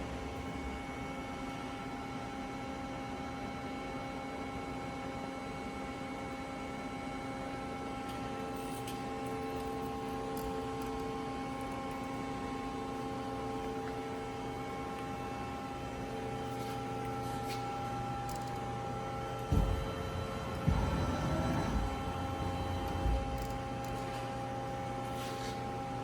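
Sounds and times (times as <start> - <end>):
lathe machine hum: 9.8 - 26.0.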